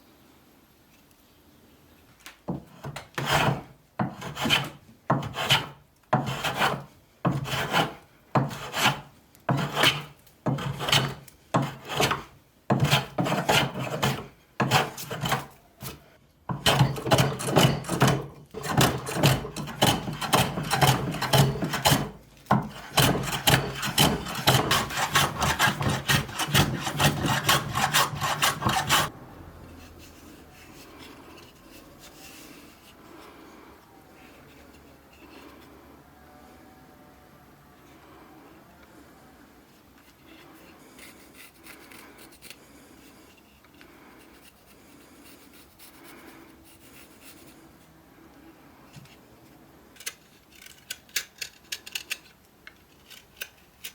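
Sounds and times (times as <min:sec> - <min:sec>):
abrasive tool rubbing on saw: 0:03.2 - 0:29.1.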